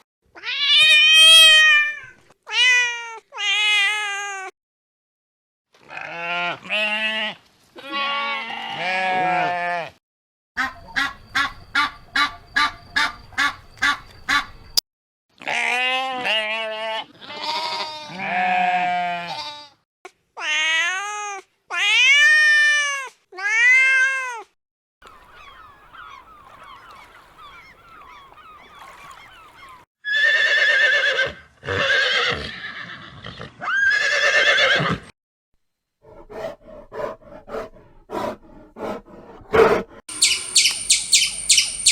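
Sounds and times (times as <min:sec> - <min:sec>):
goat bleating: 0:05.8 - 0:09.9, 0:15.4 - 0:19.8
quick pulsed animal calls: 0:40.1 - 0:41.9
short arched animal calls: 0:40.1 - 0:41.9.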